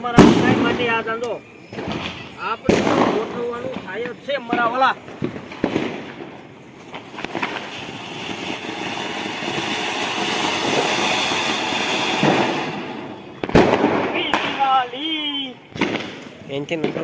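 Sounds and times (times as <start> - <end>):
loud firecracker bang: 0.0 - 14.9, 15.7 - 17.0
firework hissing and crackling: 0.0 - 17.0.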